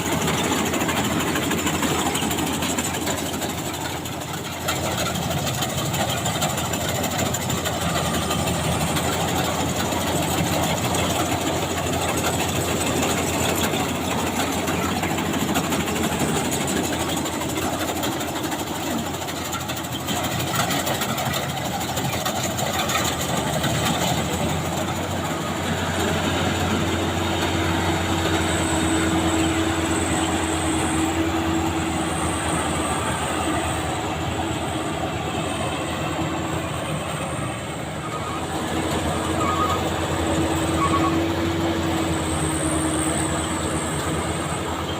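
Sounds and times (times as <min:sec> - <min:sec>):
combine harvester clatter: 0:00.0 - 0:44.9.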